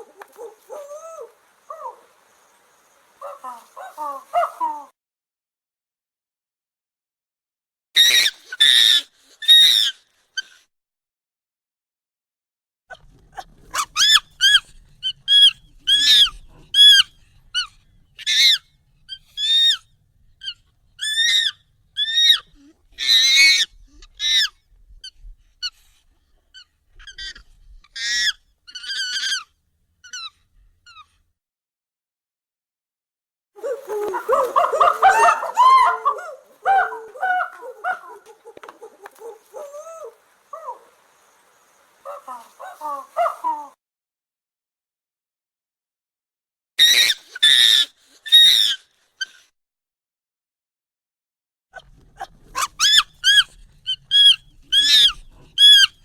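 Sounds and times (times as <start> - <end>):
high-pitched monkey calls: 3.2 - 4.9, 8.0 - 10.6, 13.8 - 24.6, 26.5 - 31.1, 33.6 - 41.2, 42.0 - 43.8, 46.8 - 49.4, 52.2 - 56.0.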